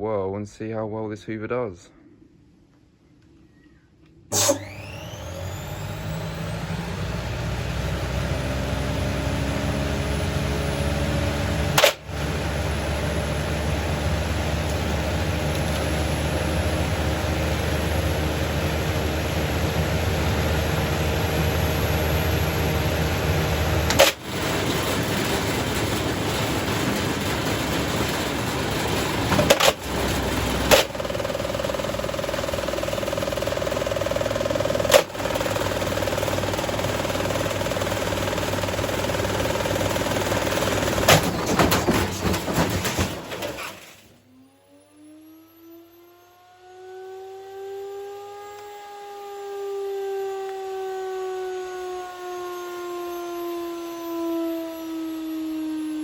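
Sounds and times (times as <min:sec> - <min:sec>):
washer-dryer drum rattling: 0:23.9 - 0:43.8.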